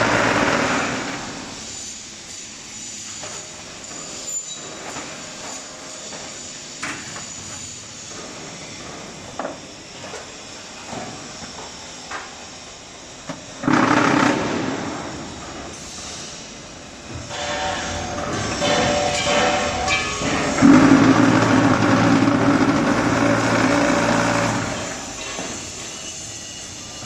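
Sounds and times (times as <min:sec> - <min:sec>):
loud harsh burst: 0:13.6 - 0:15.3, 0:17.3 - 0:25.1
block machine mechanical noise: 0:13.6 - 0:15.5, 0:17.0 - 0:27.0
knocks and clanks: 0:17.1 - 0:25.7.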